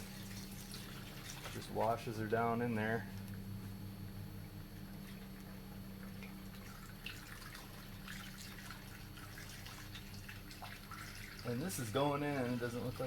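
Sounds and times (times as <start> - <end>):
liquid trickling and dripping: 0.0 - 2.0, 4.5 - 13.0.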